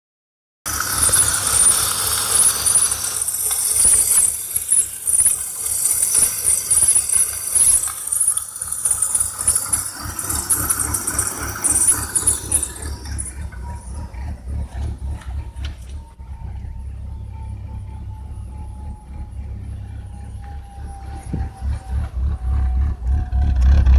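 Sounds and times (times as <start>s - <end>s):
car engine idling roughly: 8.5s - 23.9s.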